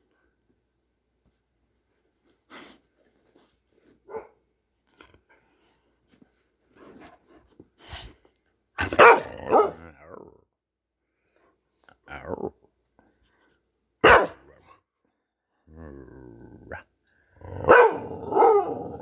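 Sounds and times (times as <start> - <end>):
dog barking: 4.1 - 4.4, 8.8 - 9.9, 14.0 - 14.6, 17.6 - 19.0.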